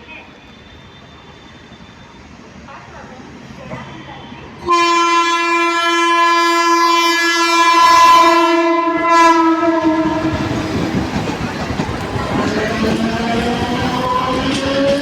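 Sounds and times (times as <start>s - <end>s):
train running on rails: 0.0s - 15.0s
train horn blast: 4.6s - 10.4s.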